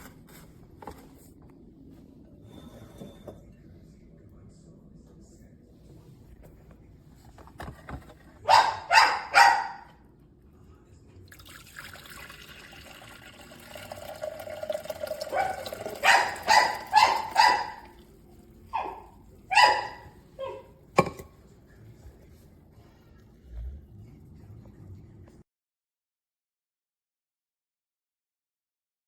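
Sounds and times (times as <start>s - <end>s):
dog barking in sharp yaps: 8.4s - 9.9s, 15.3s - 17.9s, 18.8s - 20.7s.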